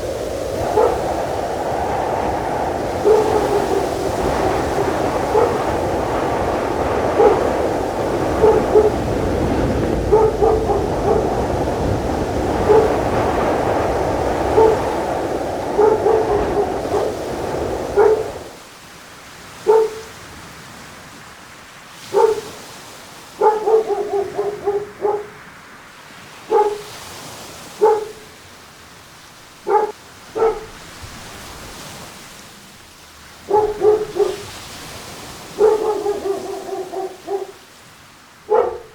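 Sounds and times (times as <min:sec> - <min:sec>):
dog barking: 0:00.2 - 0:18.6, 0:19.6 - 0:20.3, 0:22.0 - 0:22.7, 0:23.3 - 0:25.5, 0:26.4 - 0:27.0, 0:27.6 - 0:28.5, 0:29.6 - 0:31.4, 0:33.4 - 0:37.7, 0:38.5 - 0:38.9.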